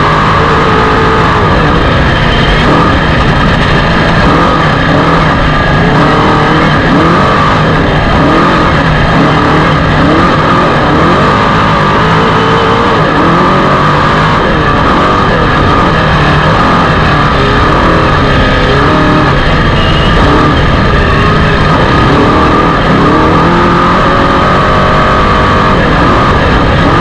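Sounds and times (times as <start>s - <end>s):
race vehicle engine revving: 0.0s - 27.0s.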